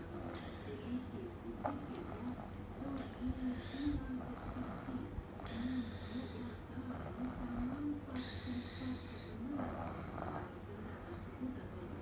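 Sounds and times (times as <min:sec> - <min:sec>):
toddler snoring: 0:01.6 - 0:10.6.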